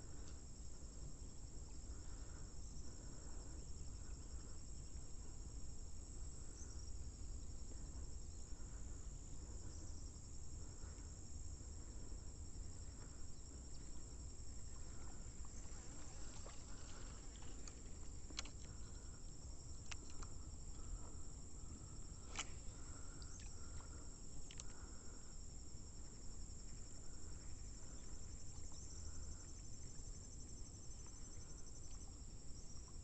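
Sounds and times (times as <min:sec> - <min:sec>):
insects trilling: 0:00.0 - 0:33.0.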